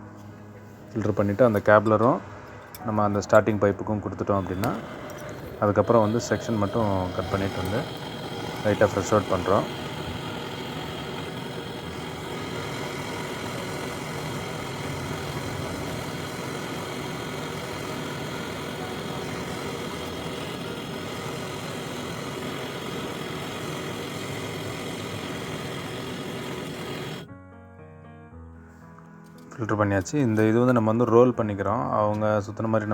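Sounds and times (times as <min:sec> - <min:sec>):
brazing torch flame burning: 0:01.0 - 0:27.3.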